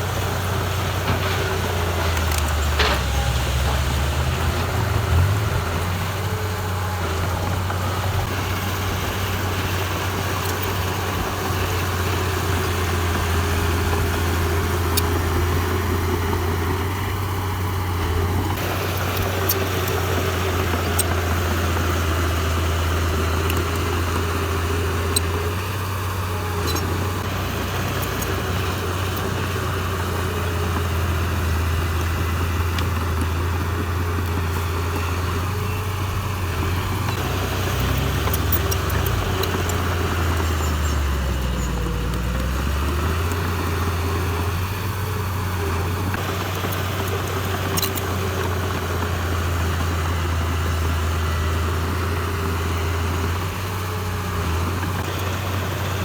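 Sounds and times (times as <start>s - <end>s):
diesel engine running: 0.0s - 56.0s
faint clicks: 22.9s - 49.0s.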